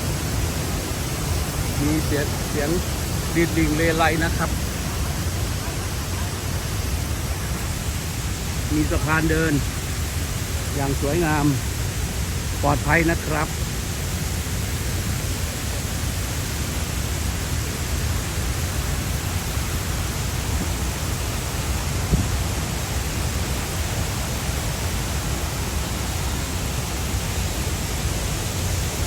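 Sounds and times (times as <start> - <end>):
waterfall rushing: 0.0 - 29.0
brief thump: 22.1 - 22.3.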